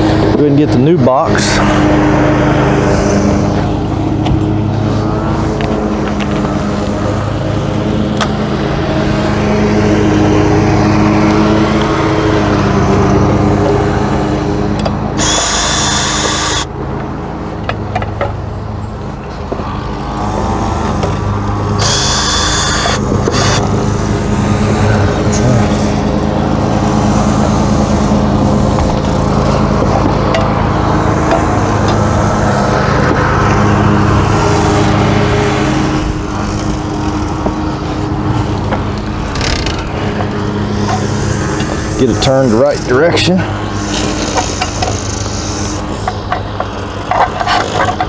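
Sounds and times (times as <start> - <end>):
lawn mower engine running: 0.0 - 48.0
short high-pitched bursts: 15.2 - 16.7, 21.8 - 23.6.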